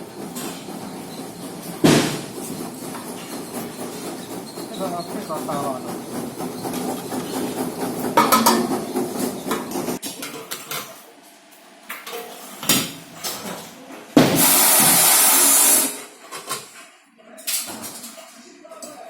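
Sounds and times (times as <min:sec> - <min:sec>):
loud knocks: 0:01.5 - 0:10.0.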